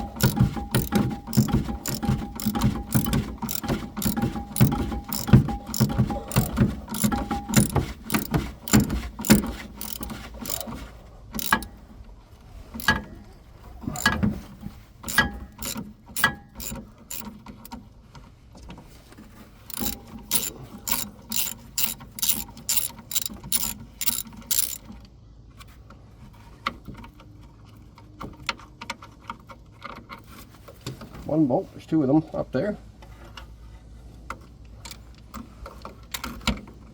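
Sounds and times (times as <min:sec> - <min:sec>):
socket ratchet clicking: 0:00.0 - 0:10.7, 0:11.4 - 0:11.7, 0:12.8 - 0:13.0, 0:15.1 - 0:17.3, 0:19.7 - 0:24.8.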